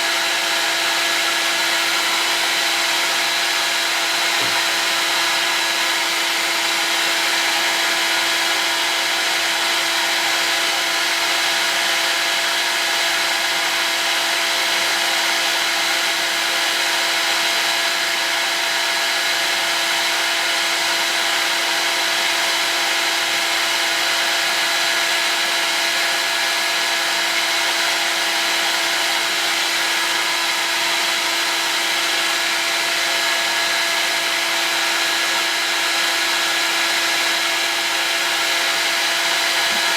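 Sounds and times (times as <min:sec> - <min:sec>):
heat gun blowing: 0:00.0 - 0:39.9.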